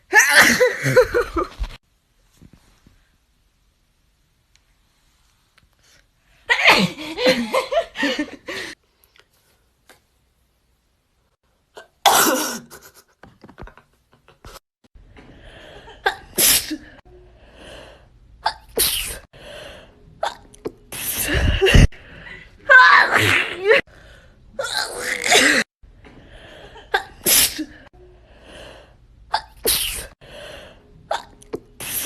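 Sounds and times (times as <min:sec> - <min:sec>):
person sneezing: 0:12.0 - 0:12.9, 0:18.5 - 0:19.3, 0:23.0 - 0:23.8, 0:27.0 - 0:27.8, 0:29.4 - 0:30.2.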